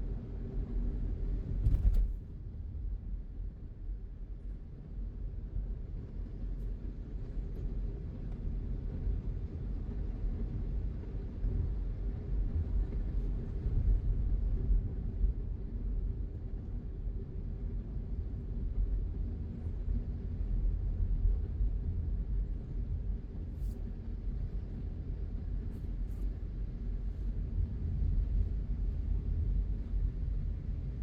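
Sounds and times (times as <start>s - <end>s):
car driving on road: 1.6s - 2.2s.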